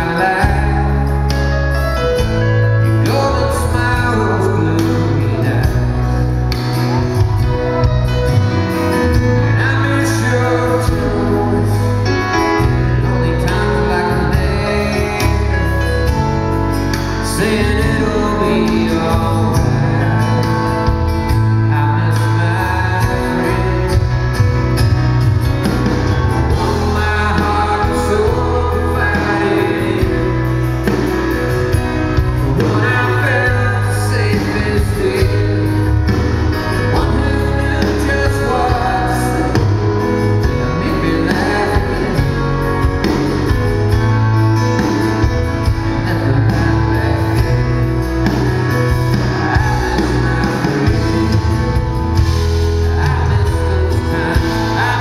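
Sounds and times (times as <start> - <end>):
man singing: 0.0 - 25.0, 25.7 - 55.0
live band playing country ballad: 0.0 - 55.0.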